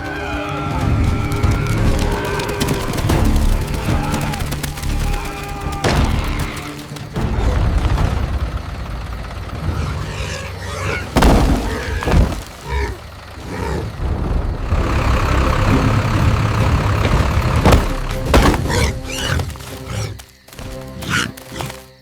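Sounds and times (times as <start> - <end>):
heavy machinery engines rumbling: 0.0 - 20.9
heavy crashing impacts: 5.8 - 19.8.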